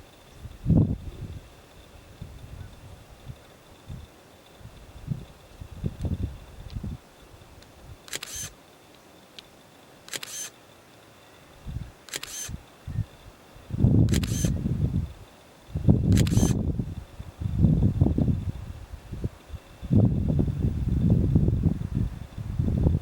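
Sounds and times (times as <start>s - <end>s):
wind rumbling on microphone: 0.0s - 8.5s, 11.6s - 23.0s
camera shutter clicking: 8.0s - 8.6s, 10.1s - 10.6s, 12.0s - 12.6s, 14.1s - 14.6s, 16.1s - 16.6s.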